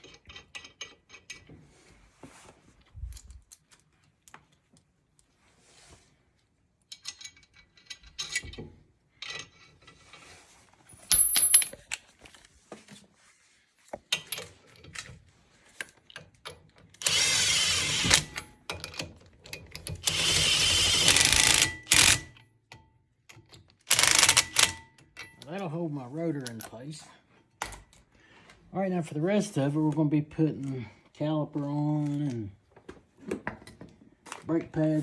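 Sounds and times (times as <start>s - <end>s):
lug nuts and washers clinking: 11.1s - 11.9s
power tool running lug nuts: 17.0s - 18.4s, 20.0s - 22.3s, 23.9s - 24.8s.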